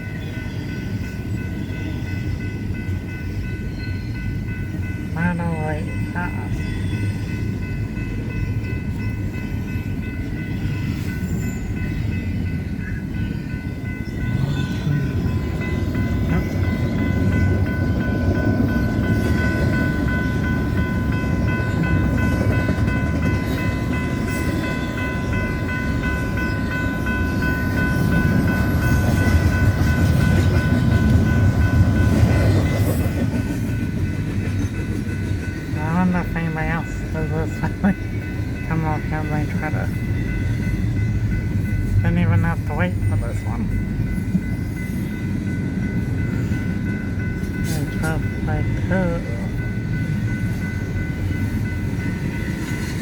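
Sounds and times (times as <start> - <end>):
crossing warning bell ringing: 0.0 - 53.0
freight train rumbling over rails: 0.0 - 53.0.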